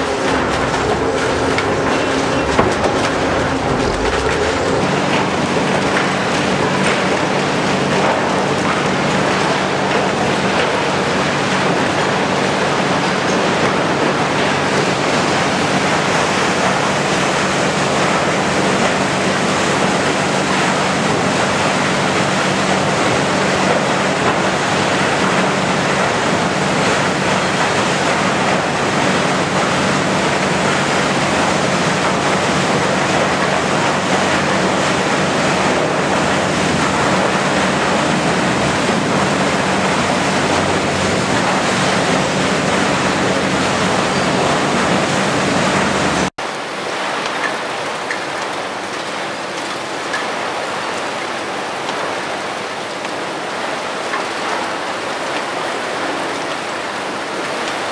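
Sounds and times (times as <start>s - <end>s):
wood grinder grinding: 0.0s - 5.2s
low machine hum: 0.0s - 19.3s.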